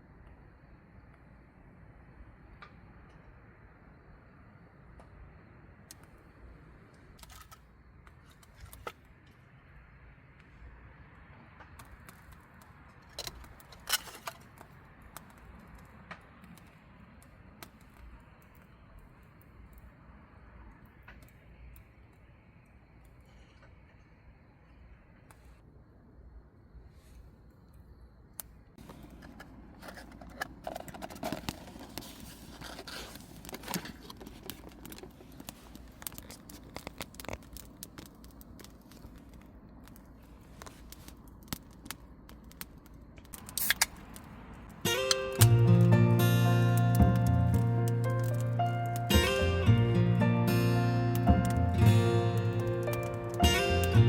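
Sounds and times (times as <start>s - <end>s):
small clicks and scrapes: 7.2s - 9.4s, 11.6s - 18.7s, 28.8s - 44.2s
crinkling and rustling: 11.6s - 16.6s, 28.8s - 44.9s.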